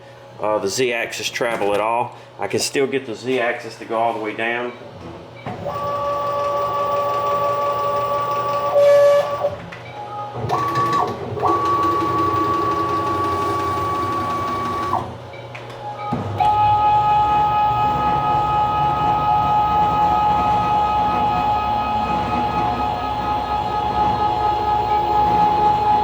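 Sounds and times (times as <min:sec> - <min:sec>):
stepper motor whining: 0:05.5 - 0:09.6, 0:10.5 - 0:15.2, 0:16.3 - 0:26.0.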